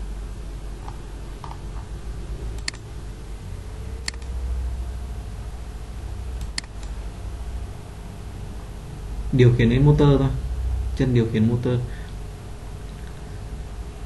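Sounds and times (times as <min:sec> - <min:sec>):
low steady hum: 0:00.0 - 0:14.0
computer mouse clicks: 0:02.6 - 0:02.8, 0:04.0 - 0:04.4, 0:06.4 - 0:07.0.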